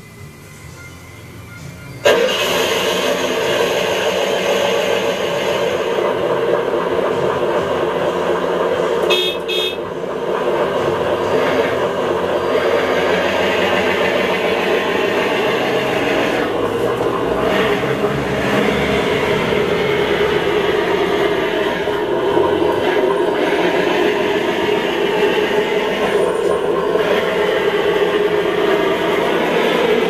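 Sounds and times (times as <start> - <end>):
engine sound through small speaker: 0.0 - 30.0
horn beeps: 9.0 - 9.9.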